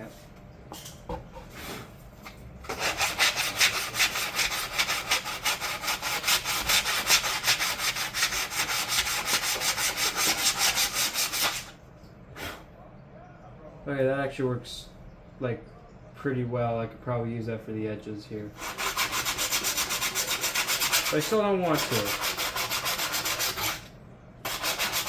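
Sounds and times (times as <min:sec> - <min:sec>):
sandpaper rubbing: 0:02.7 - 0:11.7, 0:18.6 - 0:23.9, 0:24.5 - 0:25.0.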